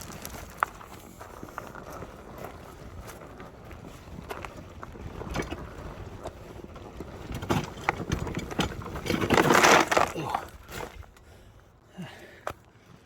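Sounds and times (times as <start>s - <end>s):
wind buffeting microphone: 0.0s - 9.3s.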